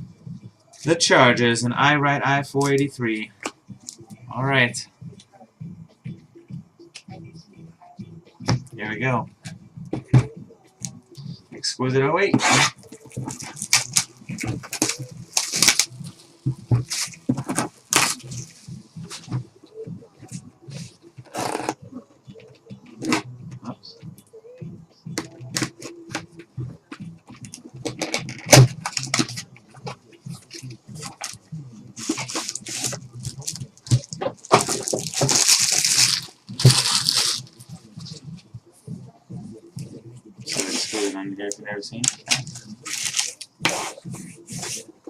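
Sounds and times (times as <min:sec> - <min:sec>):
card packaging crinkling: 0:12.8 - 0:18.6, 0:32.0 - 0:37.6, 0:42.1 - 0:43.5.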